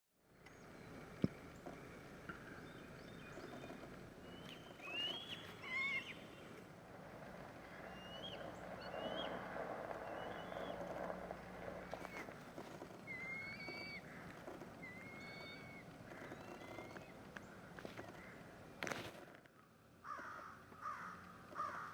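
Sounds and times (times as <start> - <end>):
outdoor background hiss: 0.2 - 21.9
eagles calling: 3.2 - 6.6, 7.6 - 11.2, 11.8 - 19.0.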